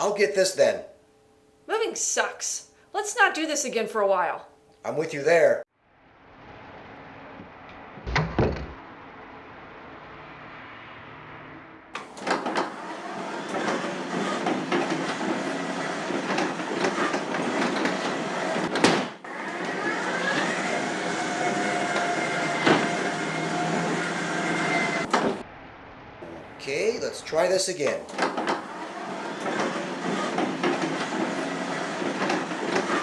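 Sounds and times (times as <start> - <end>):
thud: 8.0 - 8.8
train passing: 8.8 - 12.0, 22.0 - 32.7.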